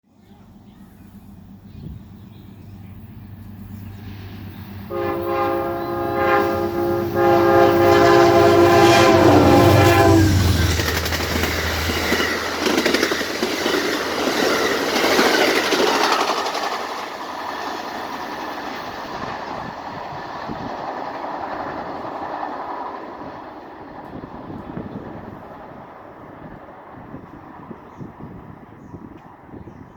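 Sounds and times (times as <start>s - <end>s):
diesel locomotive engine: 0.2s - 29.6s
train horn blasts: 4.9s - 11.5s
wheels on rails: 5.5s - 25.7s.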